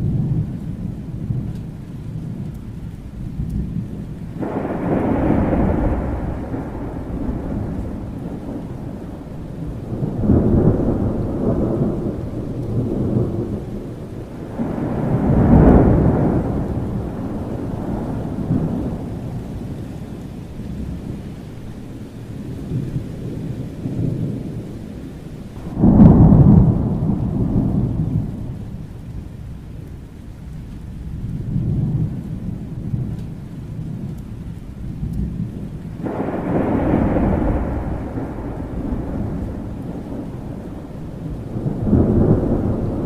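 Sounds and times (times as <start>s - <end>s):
steady rain: 0.0s - 43.0s
thunder rumbling: 0.0s - 43.0s
loud thunder peal: 4.4s - 19.7s, 25.6s - 28.8s, 35.3s - 43.0s.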